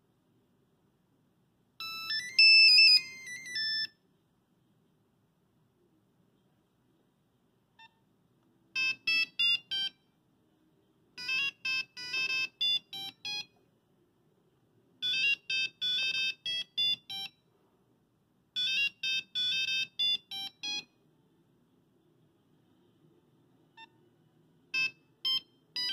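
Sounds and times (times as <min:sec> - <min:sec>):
monophonic ringtone melody: 0:01.8 - 0:03.9, 0:08.8 - 0:10.0, 0:11.2 - 0:13.5, 0:15.0 - 0:17.3, 0:18.6 - 0:20.9, 0:24.8 - 0:25.9.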